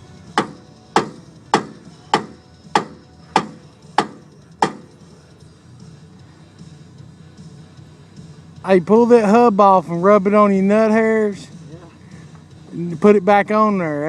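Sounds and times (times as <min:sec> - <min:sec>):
hammer striking metal hub: 0:00.3 - 0:05.0.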